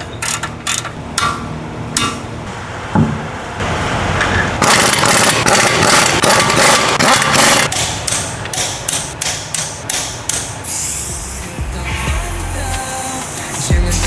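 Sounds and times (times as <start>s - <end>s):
sharp mechanical knocks: 0.0s - 2.3s, 4.6s - 10.6s
steady mechanical hiss: 10.4s - 14.0s.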